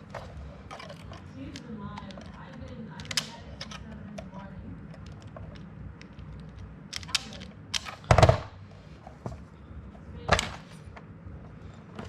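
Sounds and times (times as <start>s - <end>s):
handling clicks: 0.0s - 8.5s.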